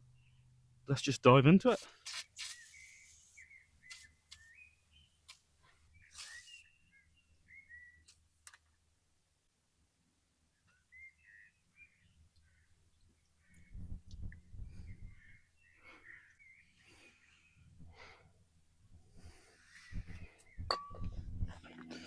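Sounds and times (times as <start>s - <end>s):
faint bird chirps: 2.1s - 8.2s, 10.5s - 18.2s, 19.3s - 21.2s.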